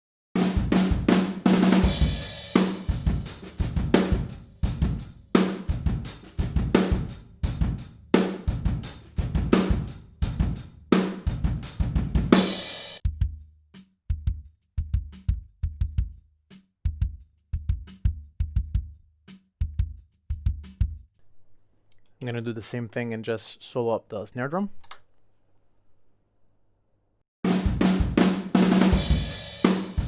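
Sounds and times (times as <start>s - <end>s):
acoustic drum kit groove: 0.4s - 21.1s, 27.4s - 30.0s.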